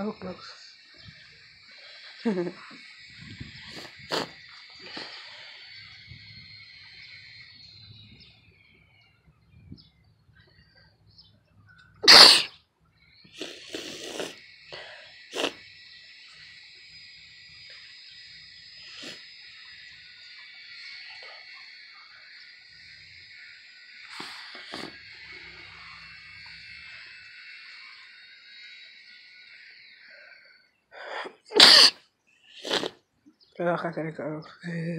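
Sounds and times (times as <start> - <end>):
high-pitched insect drone: 0.0 - 9.1, 13.1 - 32.9
person sneezing: 12.0 - 12.5, 31.1 - 32.0, 32.6 - 32.9.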